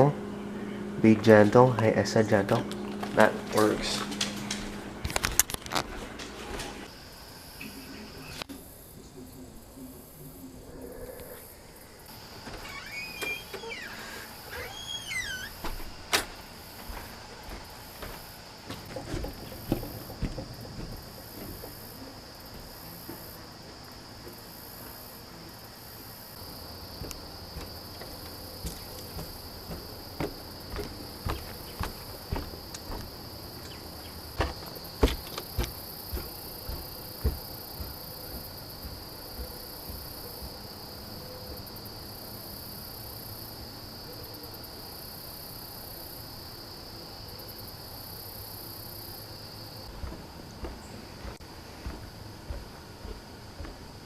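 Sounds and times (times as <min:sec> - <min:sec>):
cricket chirping: 0:06.8 - 0:54.0
irregular knocks and clicks: 0:15.6 - 0:24.4, 0:26.9 - 0:40.7, 0:49.8 - 0:54.0.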